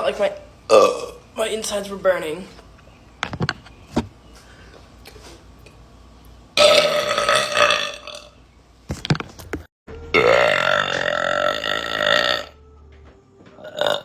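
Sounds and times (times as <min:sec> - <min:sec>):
woman burping: 0:00.7 - 0:01.2, 0:10.2 - 0:12.6.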